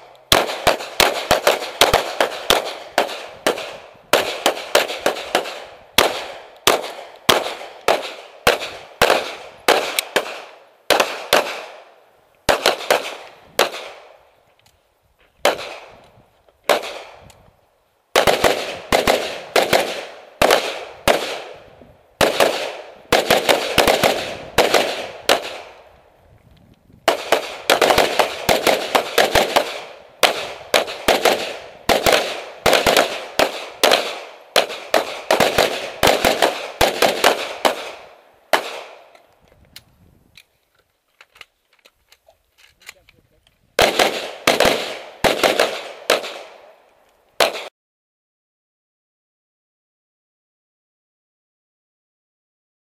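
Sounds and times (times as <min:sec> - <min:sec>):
pistol and rifle gunshots: 0:00.0 - 0:14.3, 0:15.4 - 0:17.4, 0:18.1 - 0:25.9, 0:27.0 - 0:39.2, 0:43.8 - 0:47.7.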